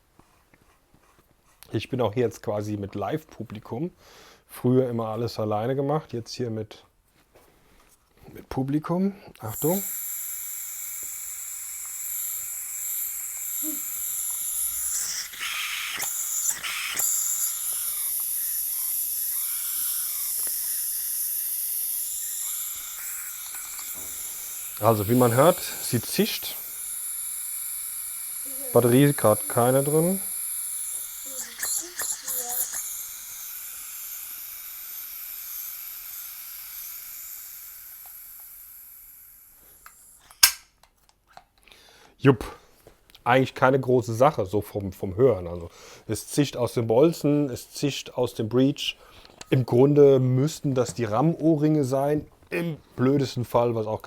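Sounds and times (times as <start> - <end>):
compressed air hissing: 9.4 - 40.4
sharp click: 39.8 - 40.9.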